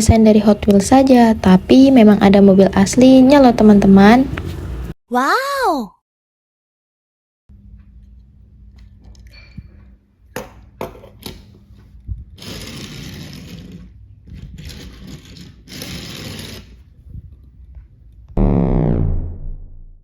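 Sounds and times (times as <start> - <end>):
toy cars clicking and knocking: 12.4 - 16.8
toy car wheels whirring: 12.4 - 16.9
downward sweeping sound effect: 18.4 - 20.0.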